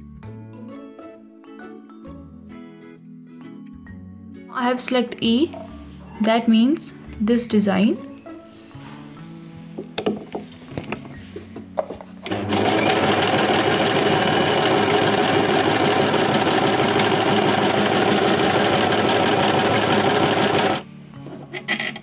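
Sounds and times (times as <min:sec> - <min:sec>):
electric sewing machine stitching: 0:12.3 - 0:20.8.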